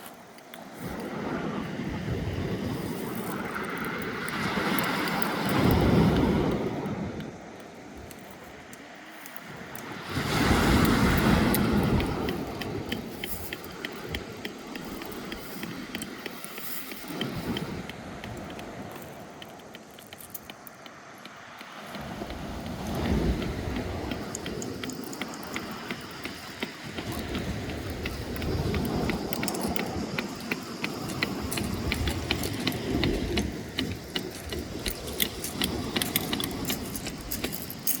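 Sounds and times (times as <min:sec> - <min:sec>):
waves on pebble shore: 0:00.0 - 0:38.0
stones rattling in backwash: 0:22.2 - 0:38.0.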